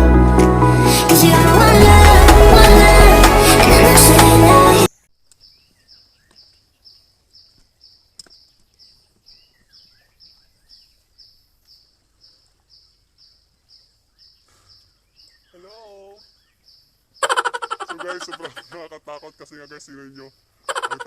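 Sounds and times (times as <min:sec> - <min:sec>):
music: 0:00.0 - 0:04.9.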